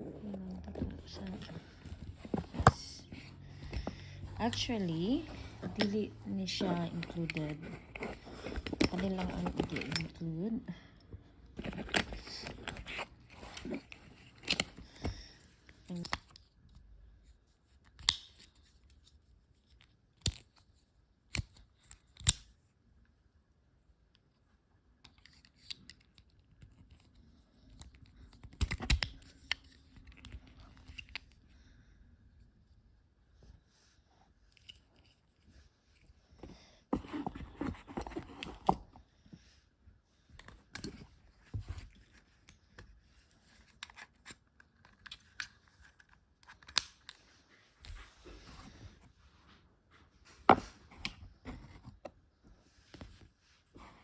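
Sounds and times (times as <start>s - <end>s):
packaging rustling and scraping: 0.0s - 10.4s, 11.6s - 15.3s, 34.6s - 39.0s.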